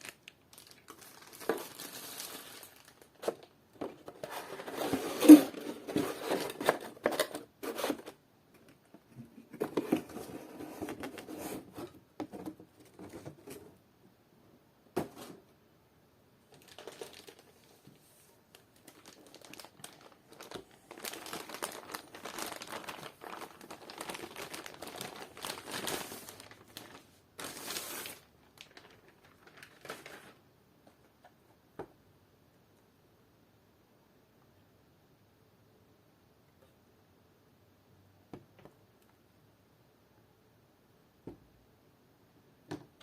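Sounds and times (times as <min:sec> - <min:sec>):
packaging crinkling and rustling: 0:00.0 - 0:08.2, 0:16.5 - 0:30.4.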